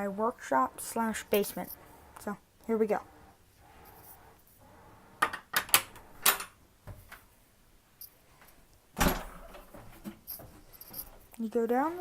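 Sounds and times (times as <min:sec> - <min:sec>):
door latch clicks and rattles: 0:09.0 - 0:09.7
door thump: 0:09.0 - 0:09.7.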